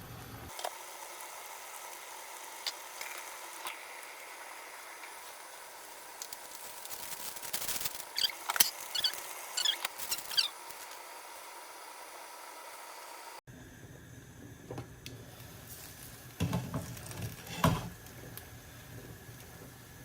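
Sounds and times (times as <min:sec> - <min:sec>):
rice pot hissing: 0:00.0 - 0:13.4
sharp crackles and clinks: 0:06.2 - 0:11.0.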